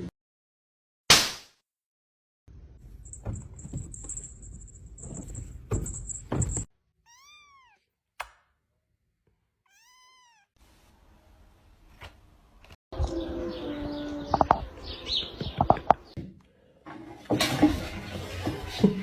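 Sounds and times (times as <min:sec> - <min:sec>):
cat meowing: 0:07.0 - 0:07.9, 0:09.7 - 0:10.5.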